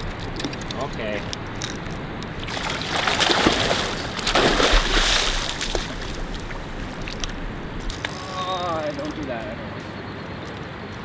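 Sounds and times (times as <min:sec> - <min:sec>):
water splashing and sloshing: 0:00.0 - 0:08.1.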